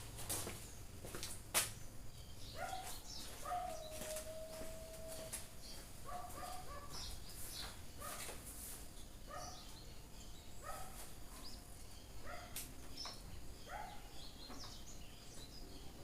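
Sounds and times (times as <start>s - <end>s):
birds chirping: 0.0s - 16.0s
steady background noise: 0.0s - 16.0s.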